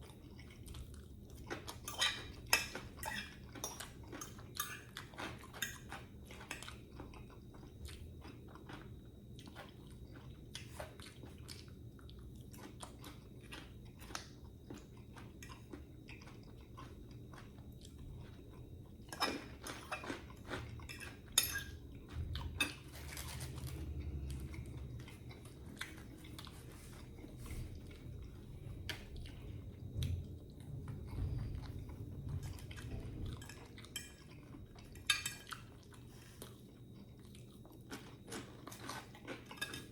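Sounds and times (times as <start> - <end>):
person chewing and crunching food: 0.0 - 39.9.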